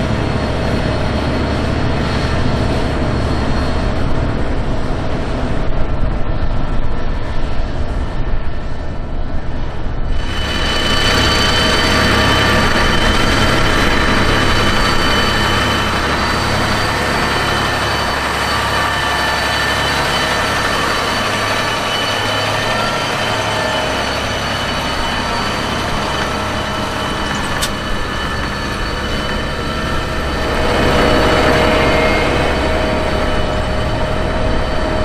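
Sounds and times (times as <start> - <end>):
drivetrain and tracks whine: 0.0 - 35.0
tractor diesel engine rumble: 10.1 - 35.0.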